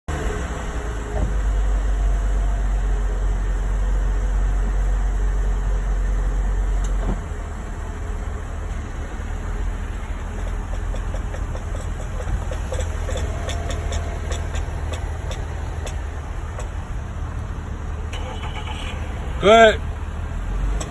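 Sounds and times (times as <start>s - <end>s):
vehicle low rumble: 0.1s - 20.9s
rapid clicks from rear end: 10.0s - 16.9s.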